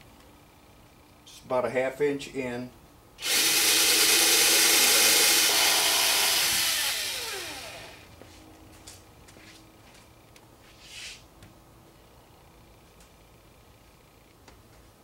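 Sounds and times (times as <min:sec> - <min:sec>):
electric drill boring into wood: 0:03.2 - 0:08.1.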